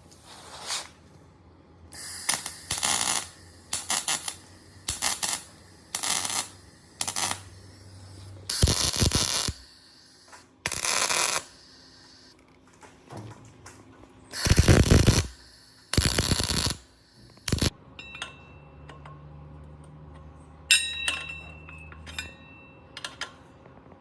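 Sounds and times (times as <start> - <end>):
workshop tool bursts: 2.0 - 12.3, 14.3 - 17.7.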